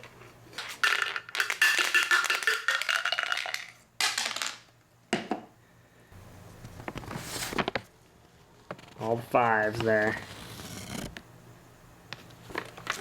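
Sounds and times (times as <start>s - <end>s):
dice clattering: 0.7s - 4.7s.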